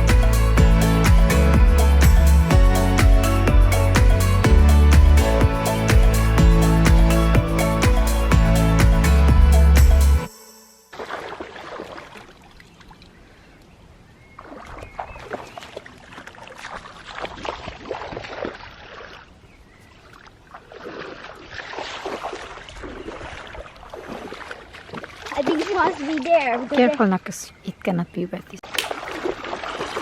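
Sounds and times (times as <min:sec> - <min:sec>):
shallow water splashing and lapping: 0:10.9 - 0:27.3, 0:28.6 - 0:30.0.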